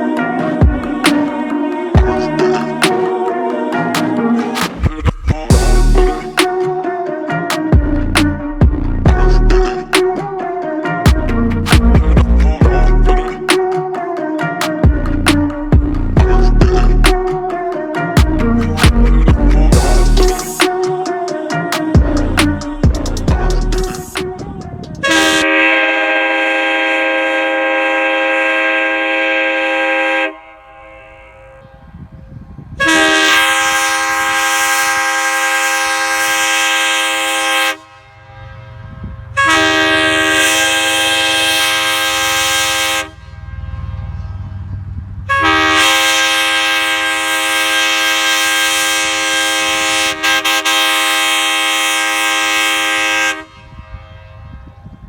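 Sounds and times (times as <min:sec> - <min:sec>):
air horn chord blasts: 0:05.5 - 0:07.1, 0:18.4 - 0:32.1, 0:32.8 - 0:44.5, 0:45.3 - 0:55.0.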